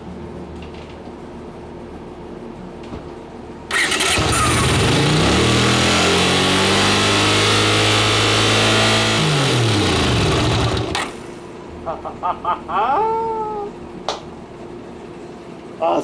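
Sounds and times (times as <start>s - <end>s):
motorcycle engine starting and idling: 3.7s - 11.4s.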